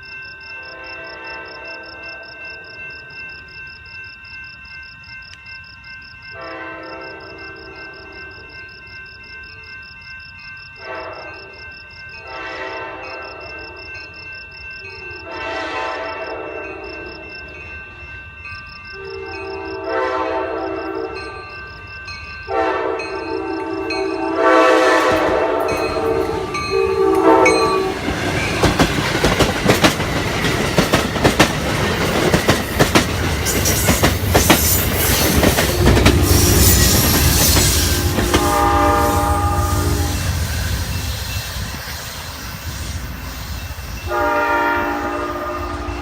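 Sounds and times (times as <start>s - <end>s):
train horn blasts: 0.6s - 2.1s, 6.4s - 8.1s, 10.8s - 11.6s, 12.2s - 13.8s, 15.2s - 17.2s, 19.0s - 21.2s, 22.5s - 28.0s, 35.4s - 40.5s, 44.1s - 46.0s
train wheels clattering over rail joints: 27.9s - 38.7s.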